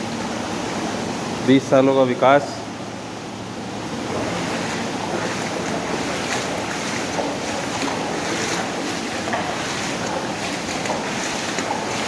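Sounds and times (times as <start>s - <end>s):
rushing rain and floodwater: 3.8s - 12.0s.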